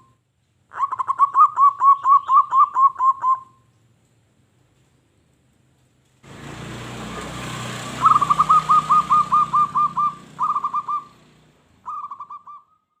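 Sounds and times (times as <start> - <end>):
dove cooing: 0.7 - 3.6, 7.9 - 12.7.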